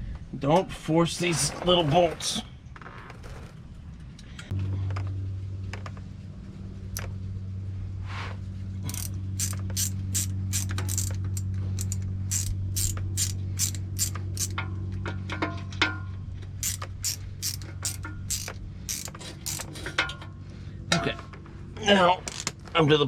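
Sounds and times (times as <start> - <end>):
steady low hum: 3.4 - 23.0
hand ratchet clicking: 8.9 - 14.6, 16.6 - 19.9.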